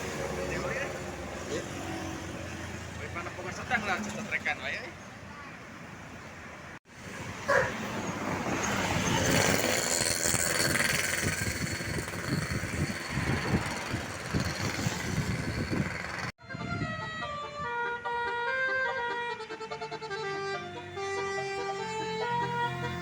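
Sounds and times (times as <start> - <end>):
vehicle noise: 0.0 - 23.0
multi-tone musical bus horn: 16.4 - 23.0.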